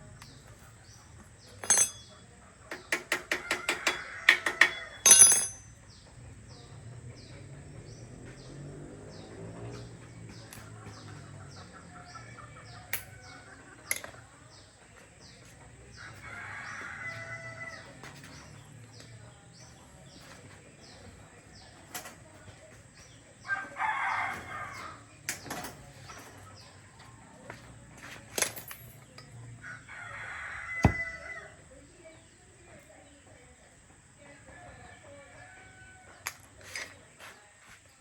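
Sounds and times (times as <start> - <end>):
chickens calling: 10.3 - 14.4.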